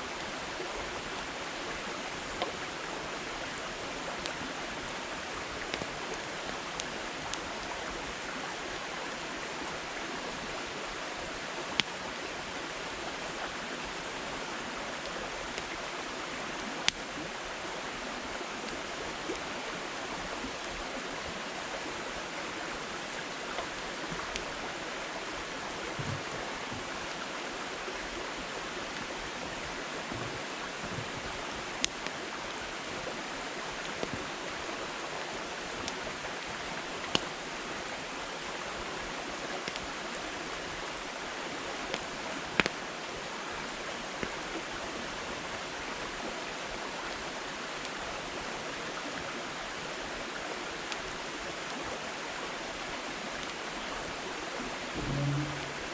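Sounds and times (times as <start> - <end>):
campfire flame hissing: 3.4 - 8.8, 39.3 - 40.6
firewood crackling and popping: 30.0 - 32.2, 41.9 - 42.8.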